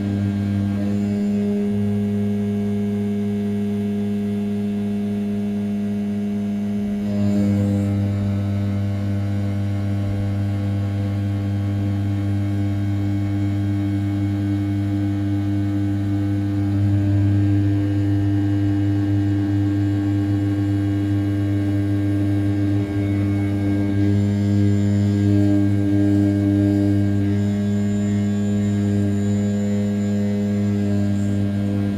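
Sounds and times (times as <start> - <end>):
milling spindle humming: 0.0 - 31.9.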